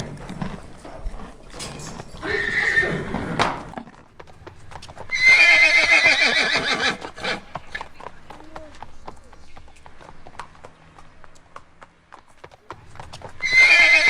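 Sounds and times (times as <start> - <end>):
horse whinnying: 2.0 - 3.7, 5.1 - 7.8, 13.4 - 14.0
hoof clops: 3.0 - 14.0.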